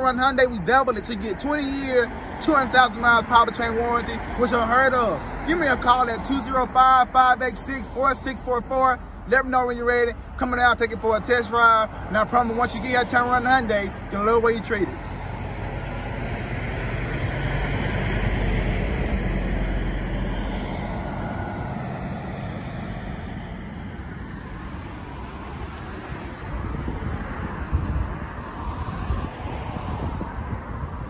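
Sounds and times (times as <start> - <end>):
vehicle rumble: 0.0 - 31.0.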